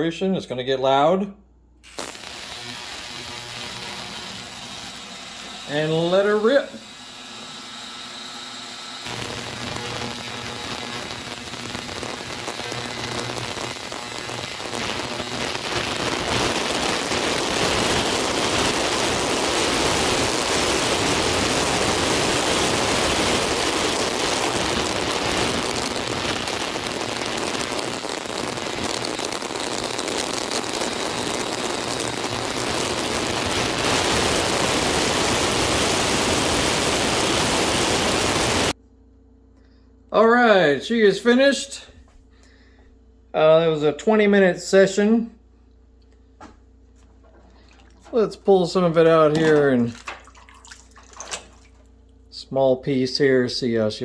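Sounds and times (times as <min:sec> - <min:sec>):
ultrasonic cleaner hissing: 0:01.9 - 0:38.8.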